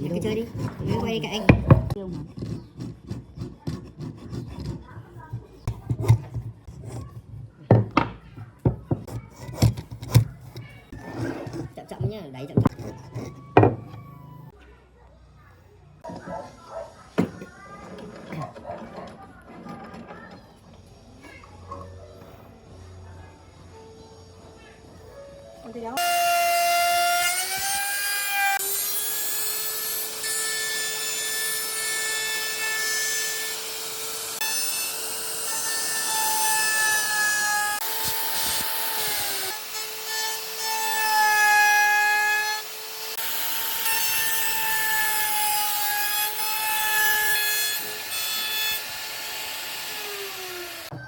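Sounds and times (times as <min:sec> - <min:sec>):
wood being cut: 0:00.0 - 0:07.1, 0:26.0 - 0:51.0
woodworking machine motor whine: 0:48.8 - 0:51.0.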